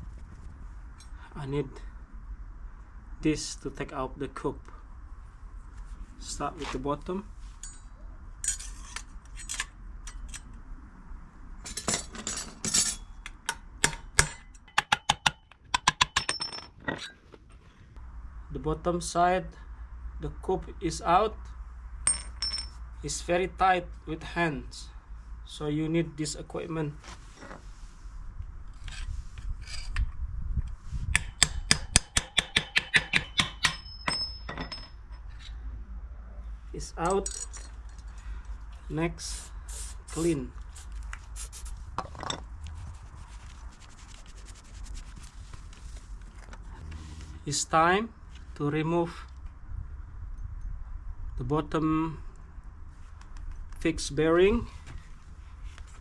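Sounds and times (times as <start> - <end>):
metal tool clinking and scraping: 7.5 - 10.5, 11.6 - 13.2, 16.0 - 17.2, 22.1 - 22.8, 33.0 - 35.6, 36.9 - 38.2
metallic ring: 11.7 - 13.2, 16.1 - 17.2, 22.0 - 22.8, 33.0 - 35.6
sharp metallic knocks: 13.5 - 16.7, 31.2 - 35.2
hammer striking metal tool: 13.8 - 16.6, 31.2 - 35.0.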